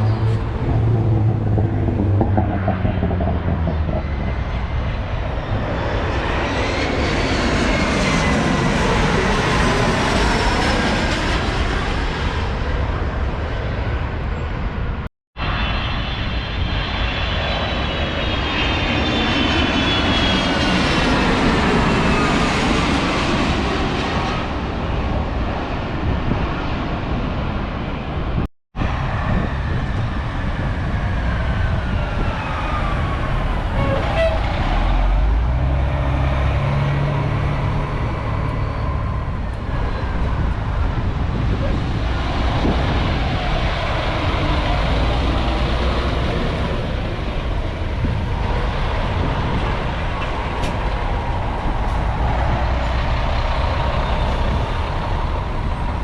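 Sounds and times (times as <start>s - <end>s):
low engine rumble: 0.0s - 11.9s
wind on microphone: 0.0s - 15.0s, 15.9s - 56.0s
jet engine whine: 0.0s - 56.0s.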